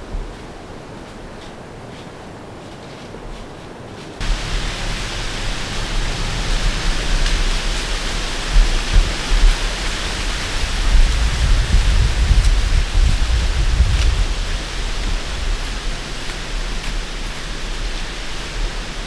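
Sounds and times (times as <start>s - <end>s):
wind buffeting microphone: 4.2s - 19.0s.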